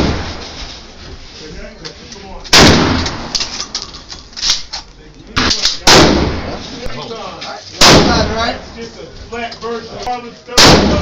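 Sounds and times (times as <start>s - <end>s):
loud gunshot with echo: 0.0s - 0.5s, 2.5s - 3.3s, 5.4s - 6.6s, 7.8s - 8.5s, 10.6s - 11.0s.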